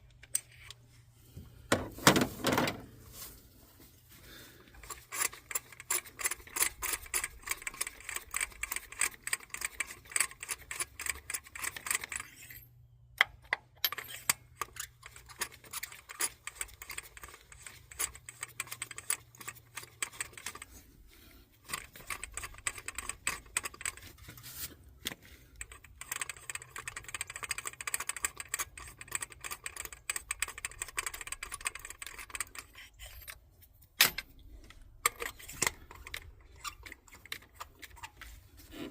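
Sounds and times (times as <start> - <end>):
socket ratchet clicking: 13.2 - 20.7, 21.7 - 24.0, 25.6 - 33.2.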